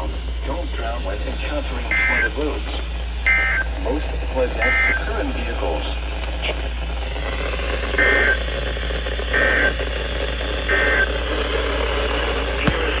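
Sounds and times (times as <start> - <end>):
radio hiss and hum: 0.0 - 13.0.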